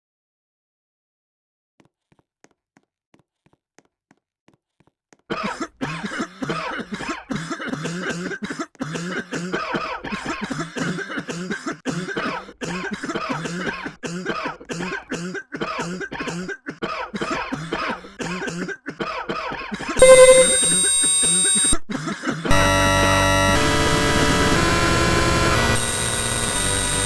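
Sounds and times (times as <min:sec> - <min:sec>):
person coughing: 0:05.3 - 0:20.0, 0:21.3 - 0:22.5.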